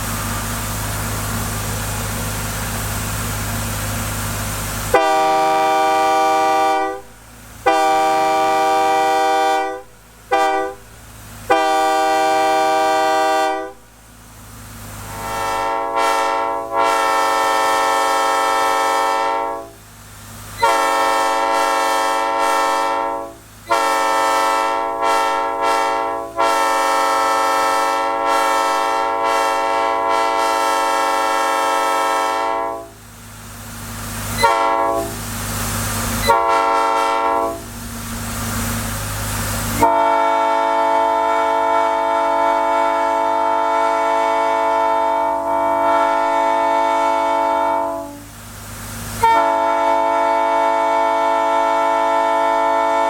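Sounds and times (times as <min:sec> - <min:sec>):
hiss of air: 0:00.0 - 0:51.2
locomotive air horn blasts: 0:04.8 - 0:14.0, 0:15.0 - 0:19.8, 0:20.5 - 0:33.1, 0:34.3 - 0:35.4, 0:36.1 - 0:37.9, 0:39.7 - 0:48.4, 0:49.1 - 0:53.0.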